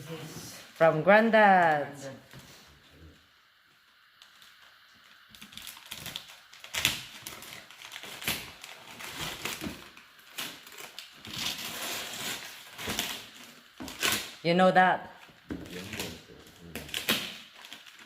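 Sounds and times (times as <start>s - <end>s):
wrapping paper tearing and crumpling: 4.2s - 14.4s, 15.6s - 18.0s.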